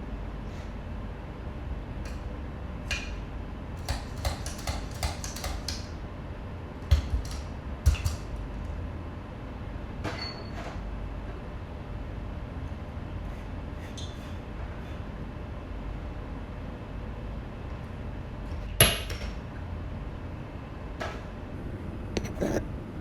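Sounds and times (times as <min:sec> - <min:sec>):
steady low hum: 0:19.4 - 0:23.0.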